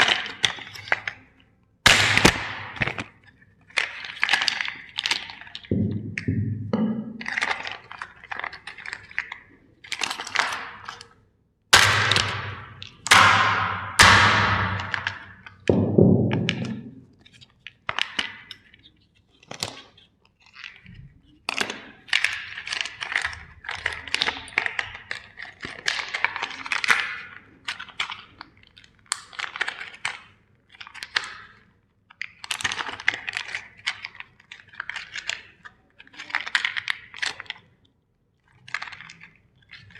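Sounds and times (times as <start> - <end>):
plastic toys cracking and crunching: 0.0 - 5.7, 7.3 - 15.7, 16.5 - 39.9.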